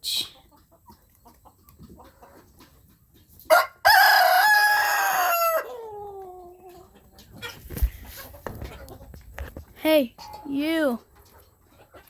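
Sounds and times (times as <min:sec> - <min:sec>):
rooster crowing: 0:03.5 - 0:05.8.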